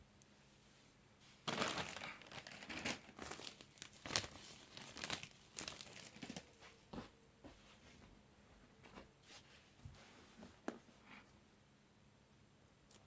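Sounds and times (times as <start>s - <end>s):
plastic packaging crinkling: 1.4s - 6.6s.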